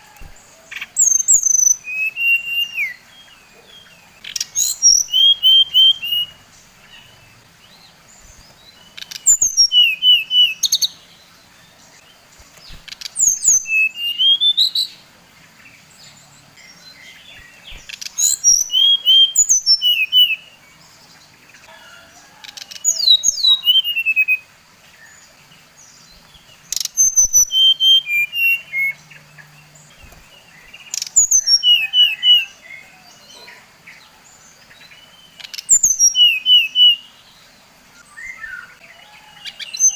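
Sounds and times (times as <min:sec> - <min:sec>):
songbird chirping in bursts: 0:00.0 - 0:39.9.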